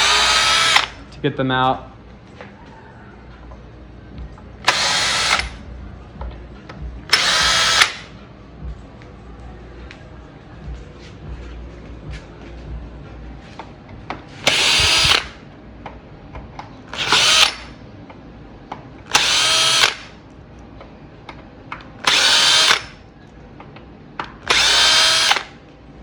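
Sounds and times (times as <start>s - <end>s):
drill bit clicks: 0.0s - 0.9s, 4.7s - 5.5s, 7.1s - 8.0s, 14.5s - 15.4s, 16.9s - 17.6s, 19.1s - 20.1s, 22.0s - 22.9s, 24.4s - 25.5s
cordless drill motor whine: 0.0s - 1.0s, 4.6s - 5.6s, 7.1s - 8.1s, 14.4s - 15.4s, 16.9s - 17.7s, 19.1s - 20.1s, 22.0s - 23.0s, 24.4s - 25.6s.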